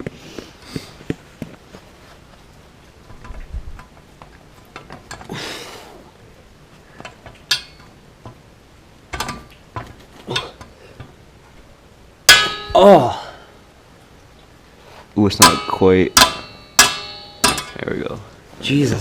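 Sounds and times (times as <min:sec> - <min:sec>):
scraping rustle: 0:00.0 - 0:05.3
metal tools clinking: 0:07.0 - 0:08.0, 0:15.4 - 0:18.0.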